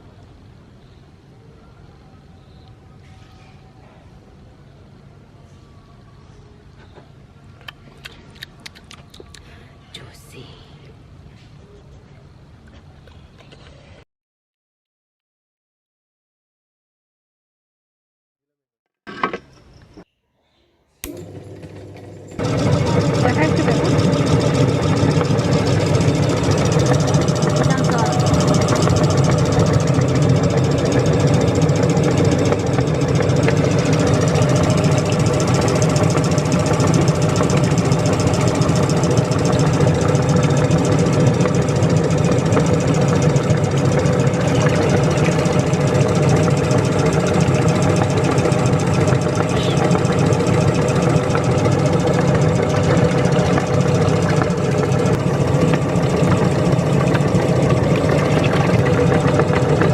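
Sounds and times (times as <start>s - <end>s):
meat grinder motor running: 21.0s - 59.9s.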